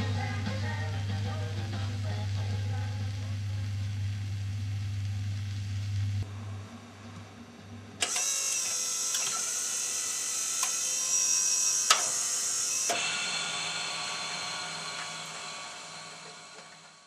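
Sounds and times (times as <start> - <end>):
jukebox mechanism whirring: 8.0 - 17.0.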